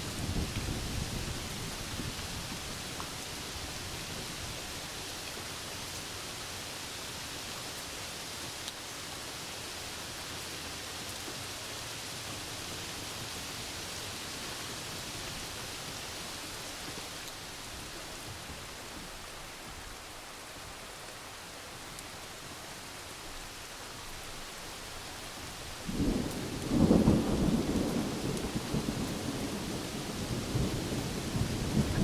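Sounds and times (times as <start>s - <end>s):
rain hiss: 0.0s - 32.0s
thunder rumbling: 25.8s - 32.0s.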